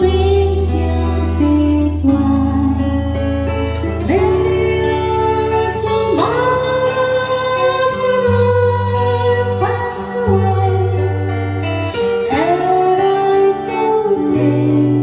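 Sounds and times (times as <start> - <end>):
bass: 0.0 - 15.0
guitar: 0.0 - 15.0
person singing long notes: 0.0 - 15.0.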